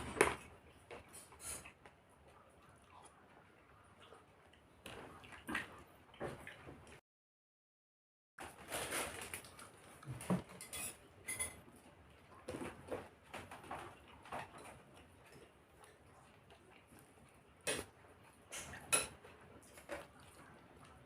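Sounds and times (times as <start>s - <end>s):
utensils clinking on a plate: 10.4s - 11.6s.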